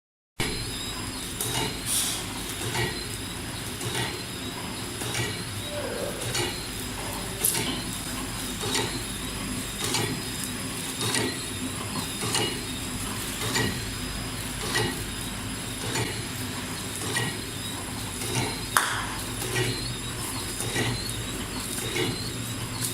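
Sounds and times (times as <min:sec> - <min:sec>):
machine humming: 0:00.4 - 0:22.9.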